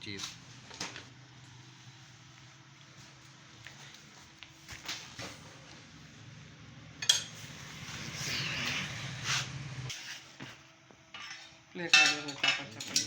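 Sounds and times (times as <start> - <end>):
metal tools clinking and scraping: 11.2 - 13.0.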